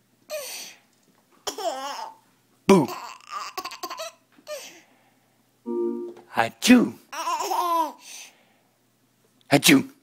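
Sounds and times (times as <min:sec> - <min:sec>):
baby laughing: 0:01.4 - 0:02.2, 0:02.8 - 0:04.6, 0:07.1 - 0:08.0.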